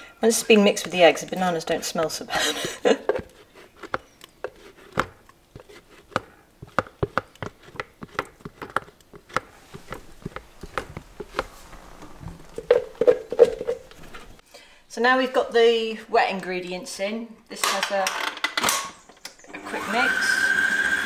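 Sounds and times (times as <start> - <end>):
utensil scraping a mixing bowl: 0.2 - 14.4.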